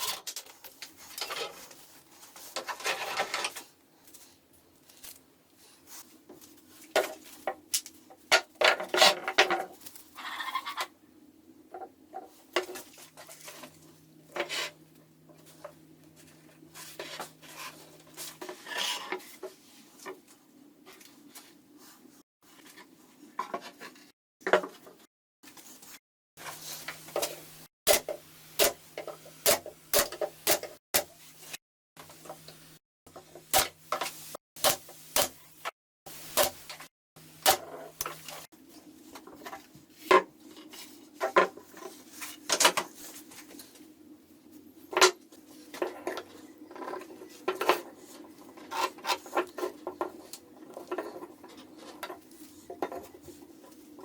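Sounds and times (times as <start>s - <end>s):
tools knocking and scraping wood: 0.0s - 3.7s, 6.2s - 9.8s, 11.7s - 21.1s, 22.6s - 25.1s, 26.4s - 31.1s, 32.0s - 35.7s, 39.1s - 43.6s, 44.9s - 54.0s.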